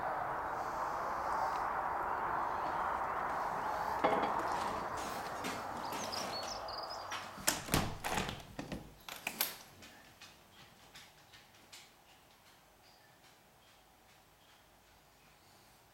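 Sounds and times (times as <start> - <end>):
motorway traffic rushing: 0.0 - 8.9
bird chirping: 2.0 - 8.0.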